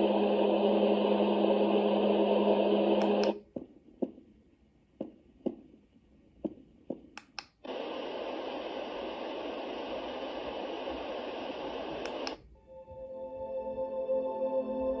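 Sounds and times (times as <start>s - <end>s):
white noise hiss: 6.6s - 12.6s.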